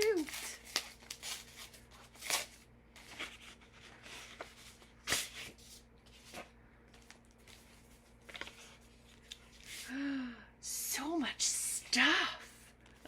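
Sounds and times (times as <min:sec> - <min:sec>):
paper rustling and crinkling: 0:00.0 - 0:09.8.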